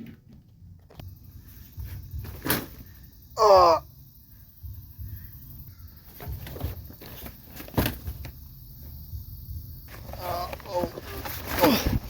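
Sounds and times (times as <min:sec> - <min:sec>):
knocks and thumps of a scuffle: 0:06.1 - 0:08.4, 0:09.9 - 0:12.0.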